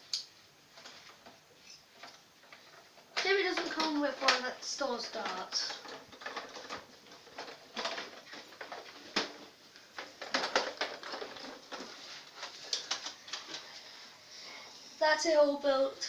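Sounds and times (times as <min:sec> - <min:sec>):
plastic parts rustling: 0:00.7 - 0:14.0
plastic clicks: 0:01.7 - 0:13.7.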